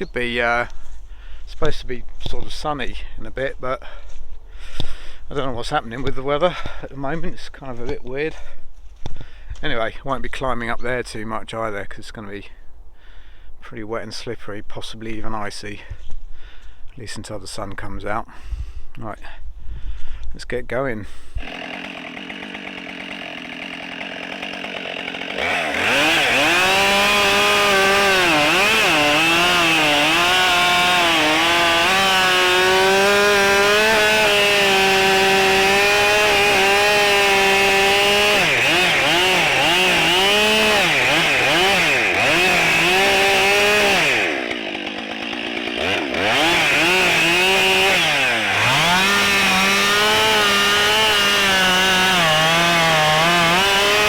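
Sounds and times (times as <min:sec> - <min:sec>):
chainsaw cutting wood: 0:21.4 - 0:54.0.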